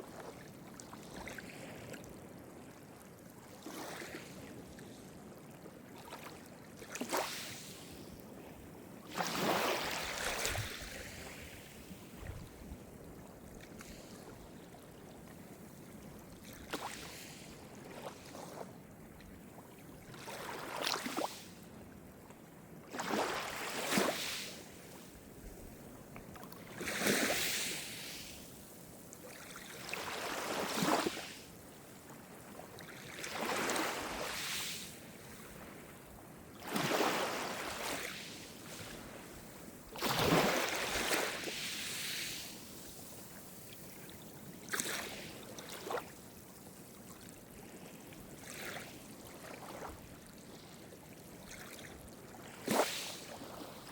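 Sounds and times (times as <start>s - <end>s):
waves breaking on shore: 9.1s - 12.0s, 22.9s - 25.1s, 26.7s - 28.5s, 36.6s - 43.0s, 52.6s - 53.9s.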